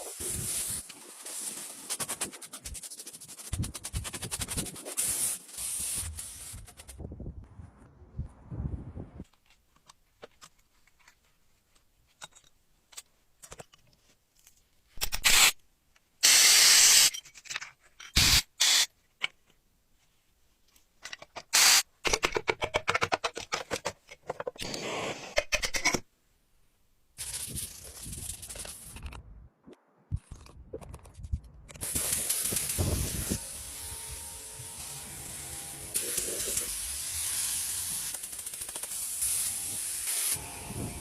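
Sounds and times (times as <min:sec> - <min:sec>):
short hissing bursts: 0:31.8 - 0:41.0.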